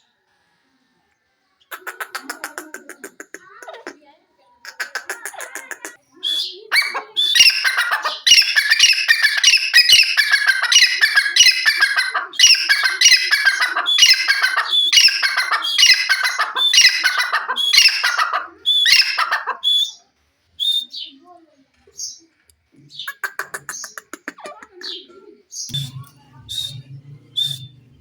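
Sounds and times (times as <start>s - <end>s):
bird calling harsh phrases: 4.6s - 20.0s, 23.0s - 28.0s.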